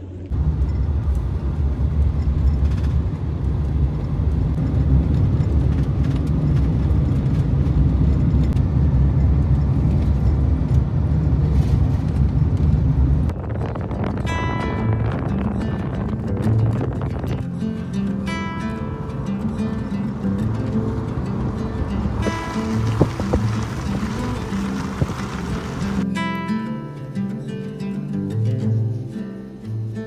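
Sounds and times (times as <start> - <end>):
vehicle rumbling: 0.0 - 26.1
music: 13.3 - 30.0.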